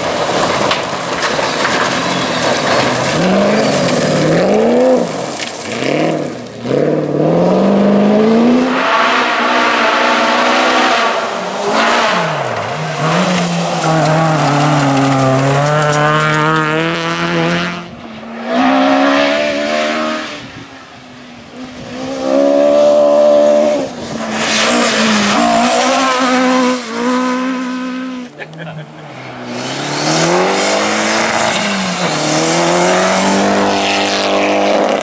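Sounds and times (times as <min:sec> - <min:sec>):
cars passing loudly: 0:00.0 - 0:35.0
rally car engines revving: 0:00.0 - 0:35.0.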